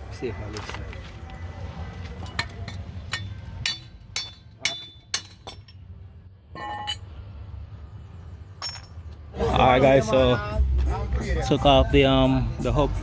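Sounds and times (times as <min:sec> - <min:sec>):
metal tools clinking: 0:02.2 - 0:05.9, 0:06.6 - 0:07.1, 0:08.6 - 0:09.2.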